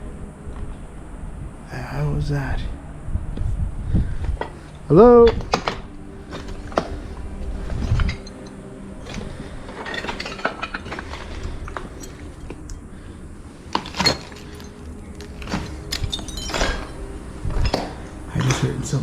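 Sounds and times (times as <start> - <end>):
debris clinking and scraping: 4.4 - 18.0.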